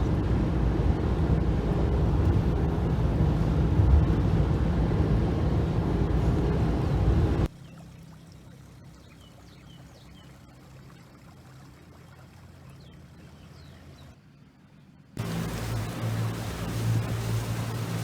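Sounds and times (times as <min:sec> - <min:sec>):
water trickling and lapping: 0:07.4 - 0:14.6.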